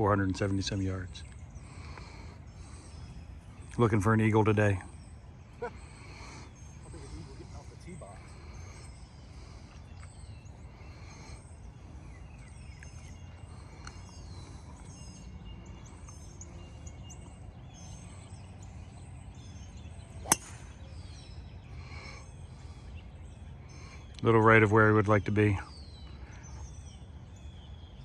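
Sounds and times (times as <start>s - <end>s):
birds chirping: 0.0s - 28.0s
outdoor background noise: 0.0s - 28.0s
golf club striking ball: 20.2s - 21.0s.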